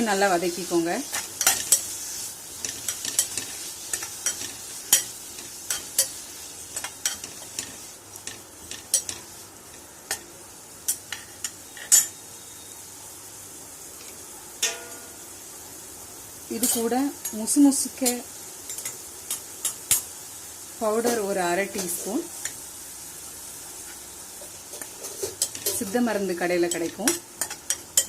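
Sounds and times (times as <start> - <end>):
leaves sizzling in a pan: 0.0 - 28.0
spatula scraping a pan: 0.2 - 10.2, 23.9 - 28.0.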